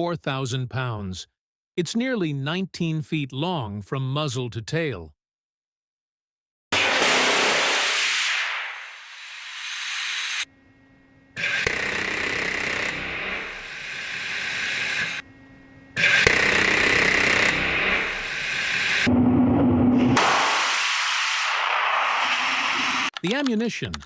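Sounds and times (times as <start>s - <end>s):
rotary cannon firing: 6.7s - 9.0s, 20.0s - 22.4s.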